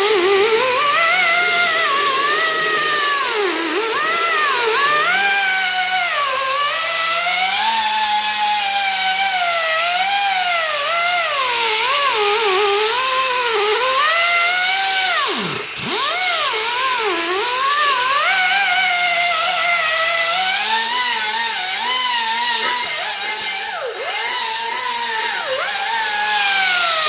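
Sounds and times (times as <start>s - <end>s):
air sander whining: 0.0s - 27.0s.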